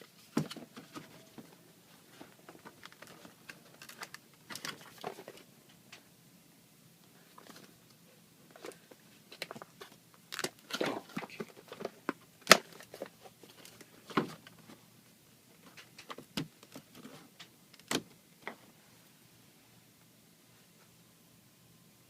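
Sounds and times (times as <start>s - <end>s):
packaging crinkling: 2.7s - 5.4s.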